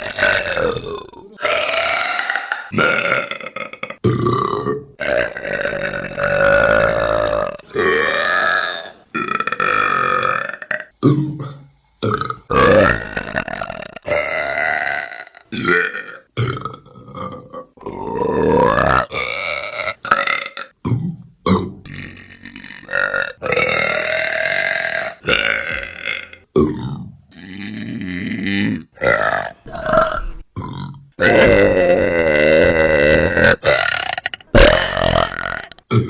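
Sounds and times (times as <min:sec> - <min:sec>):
women burping: 0:29.1 - 0:36.0.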